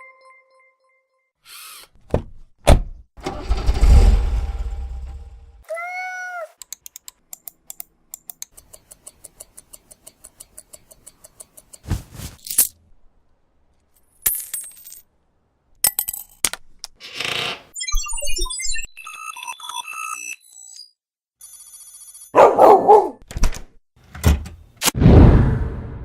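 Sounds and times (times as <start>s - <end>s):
short whooshes: 11.9s - 12.4s.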